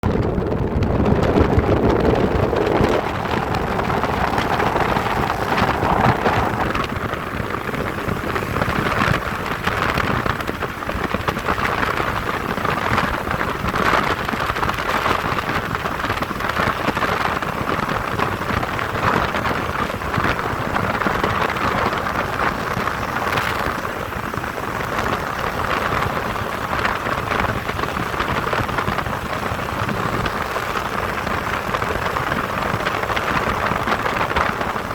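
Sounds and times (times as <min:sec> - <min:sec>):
wind buffeting microphone: 0:00.0 - 0:34.9.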